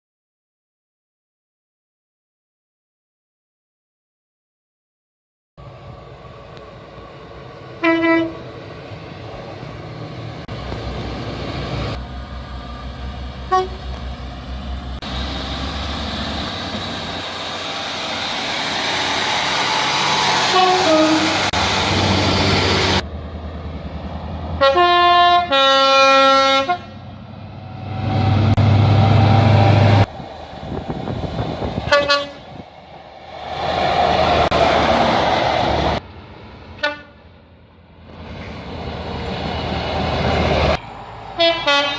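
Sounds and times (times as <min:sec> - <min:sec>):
low diesel engine drone: 0:05.6 - 0:41.9
train rumble: 0:05.6 - 0:41.9
train horn blasts: 0:07.8 - 0:08.4, 0:13.5 - 0:13.9, 0:20.5 - 0:21.5, 0:24.6 - 0:27.0, 0:31.9 - 0:32.5, 0:36.8 - 0:37.2, 0:41.4 - 0:41.9.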